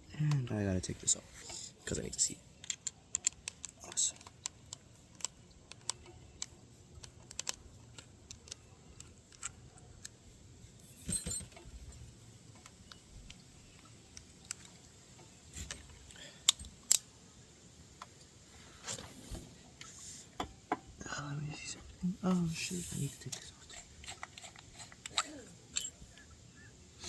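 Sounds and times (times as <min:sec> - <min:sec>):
metal tools clicking and clinking: 0:10.8 - 0:11.7.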